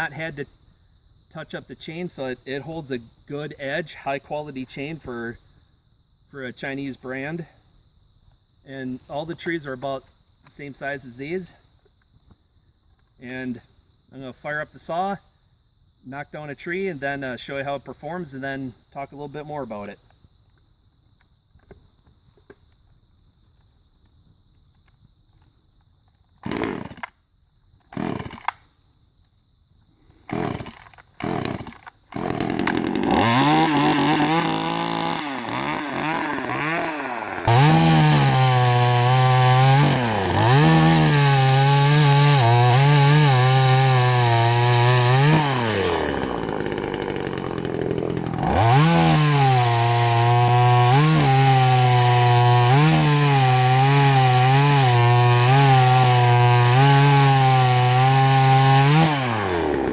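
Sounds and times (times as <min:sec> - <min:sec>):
chainsaw revving: 0:26.4 - 0:27.1, 0:28.0 - 0:28.5, 0:30.3 - 0:59.9
chainsaw pull-starting: 0:26.4 - 0:27.2, 0:27.9 - 0:28.6, 0:30.2 - 0:59.9.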